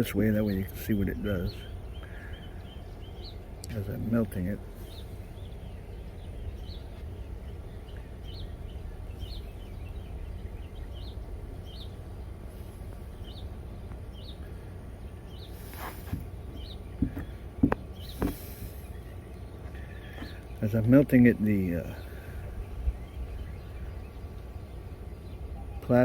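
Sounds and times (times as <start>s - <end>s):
small bird chirping: 0.0s - 26.0s
steady low hum: 0.0s - 26.0s
brief hiss: 15.6s - 16.3s
sharp knocks: 17.0s - 18.4s.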